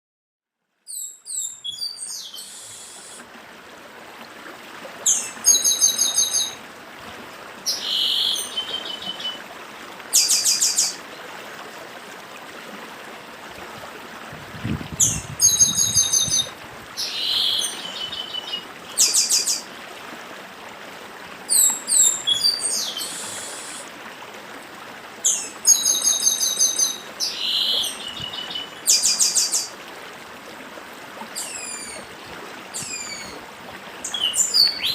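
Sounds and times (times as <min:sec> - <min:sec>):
blackbird singing: 0:00.9 - 0:03.2, 0:05.1 - 0:06.6, 0:07.7 - 0:09.4, 0:15.0 - 0:19.6, 0:21.5 - 0:23.8, 0:32.8 - 0:33.3, 0:34.1 - 0:34.9
stream rushing: 0:01.3 - 0:34.9.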